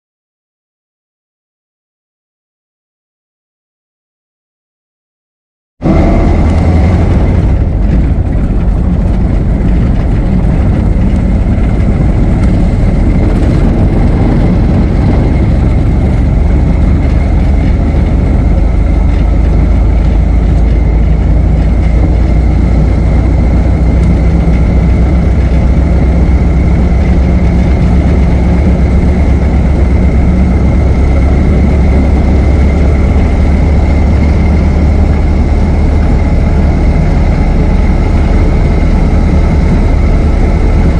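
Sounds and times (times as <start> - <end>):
car engine rumbling: 5.8 - 40.9.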